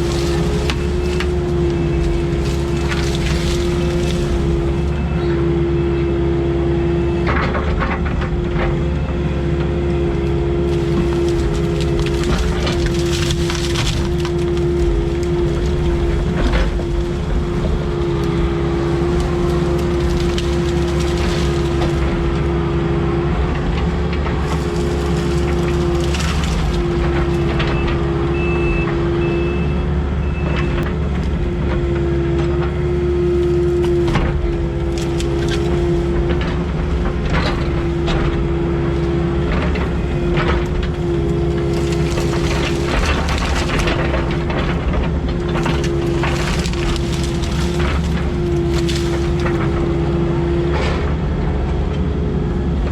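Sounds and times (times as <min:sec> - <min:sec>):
branches cracking and snapping: 0:00.0 - 0:05.6, 0:07.3 - 0:28.3, 0:30.8 - 0:51.1
diesel heavy equipment running: 0:00.0 - 0:52.9.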